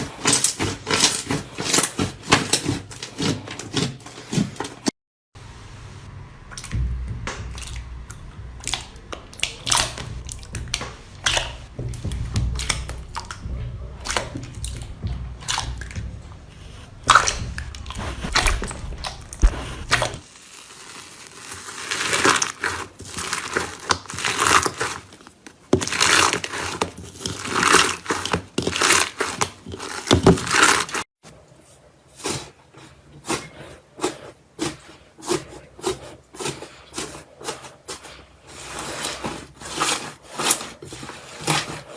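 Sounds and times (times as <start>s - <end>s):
slime popping and squishing: 25.7s - 31.0s.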